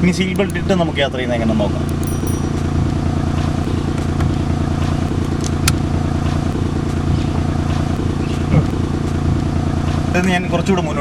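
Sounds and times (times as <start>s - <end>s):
car engine running: 0.0s - 11.0s
sharp click: 0.4s - 0.8s, 1.8s - 2.6s.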